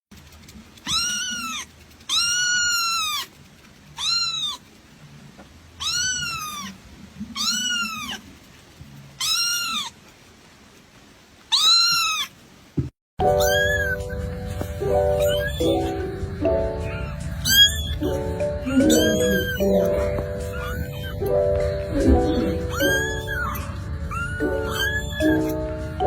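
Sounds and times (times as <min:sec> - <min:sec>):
kitten meowing: 0:00.8 - 0:03.4, 0:04.0 - 0:04.7, 0:05.8 - 0:08.3, 0:09.2 - 0:10.0, 0:11.5 - 0:12.4, 0:13.2 - 0:25.8.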